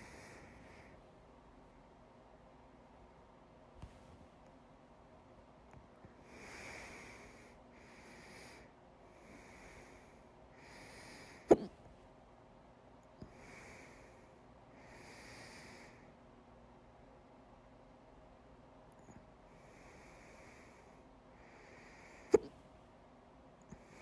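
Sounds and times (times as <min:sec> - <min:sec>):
person breathing: 0:00.0 - 0:01.0, 0:06.1 - 0:11.6, 0:13.2 - 0:16.2, 0:19.0 - 0:22.6, 0:23.7 - 0:24.0.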